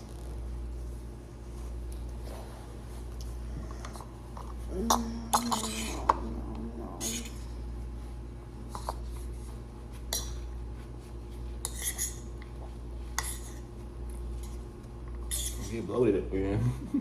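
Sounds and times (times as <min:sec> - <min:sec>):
steady low hum: 0:00.0 - 0:17.0
fork scraping on a plate: 0:05.3 - 0:06.2, 0:11.6 - 0:13.7, 0:15.2 - 0:15.8.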